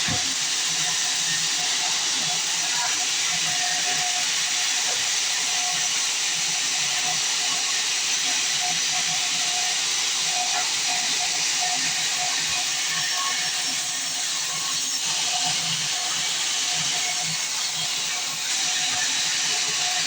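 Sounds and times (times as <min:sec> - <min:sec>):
band saw blade cutting log: 0:14.8 - 0:20.0.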